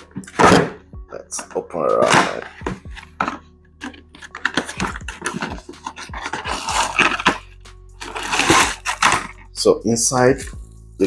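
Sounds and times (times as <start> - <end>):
packaging rustling: 2.0 - 9.4.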